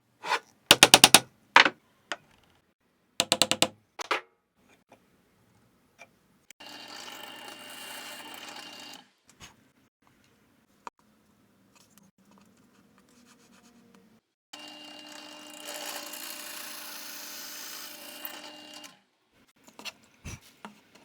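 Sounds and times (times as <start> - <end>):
sharp clicks or taps: 3.2 - 3.7
wood knocks: 3.2 - 3.7
woodworking tool whirring: 14.6 - 19.0.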